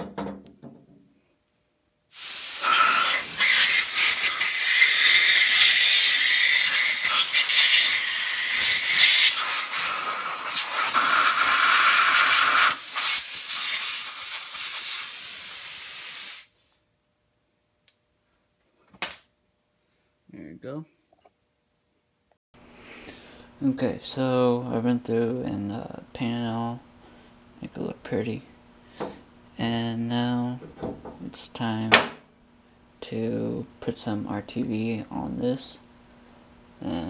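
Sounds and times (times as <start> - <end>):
compressed air blow gun hissing: 2.1 - 16.8.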